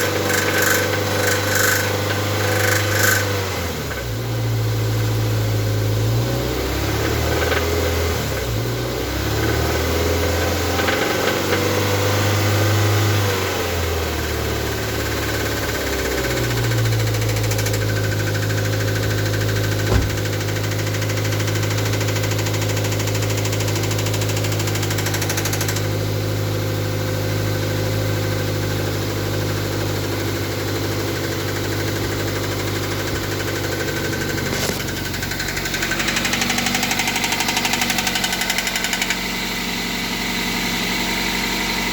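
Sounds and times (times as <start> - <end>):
engine knocking: 0.0 - 4.0, 14.2 - 41.9
car engine idling: 0.0 - 6.0, 14.2 - 41.9.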